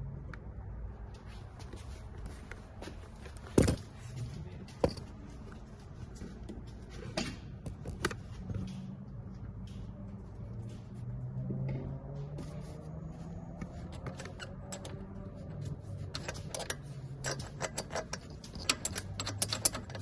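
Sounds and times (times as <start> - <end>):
light metal ticks and rattles: 13.6 - 20.0.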